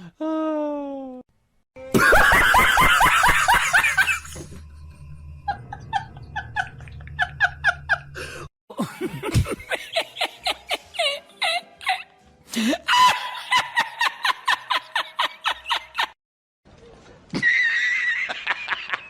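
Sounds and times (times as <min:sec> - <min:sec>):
people laughing: 0:01.9 - 0:04.6, 0:05.5 - 0:08.2, 0:08.8 - 0:16.2
rhythmic ha-ha-ha laugh: 0:01.9 - 0:04.6, 0:05.4 - 0:16.2.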